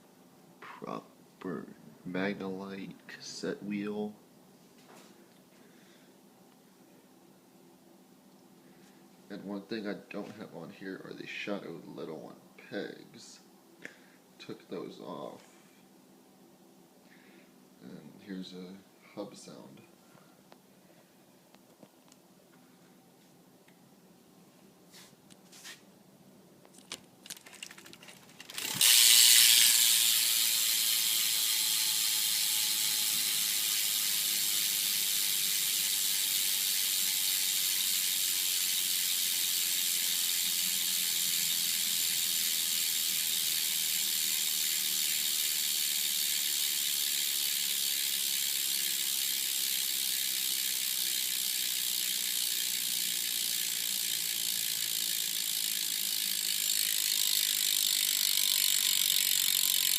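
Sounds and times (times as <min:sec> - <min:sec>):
bicycle hub ratchet buzz: 0:26.9 - 0:59.9.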